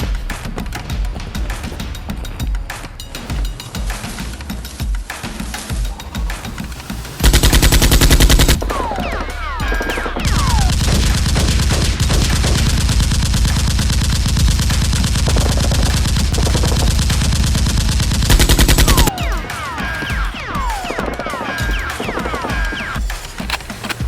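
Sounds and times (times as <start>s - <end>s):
machine-gun fire: 7.2s - 8.9s, 9.8s - 22.8s
falling whistle-like tones: 8.6s - 10.7s.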